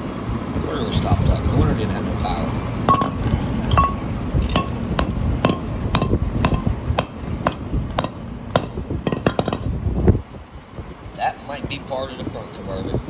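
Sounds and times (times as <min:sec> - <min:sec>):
hammer striking metal: 0:02.9 - 0:09.8.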